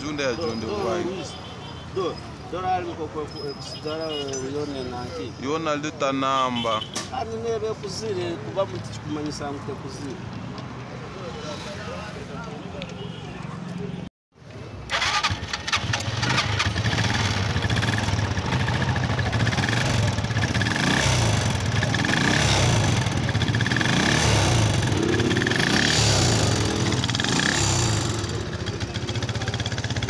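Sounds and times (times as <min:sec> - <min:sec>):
motorcycle engine starting and revving: 0:14.8 - 0:30.0.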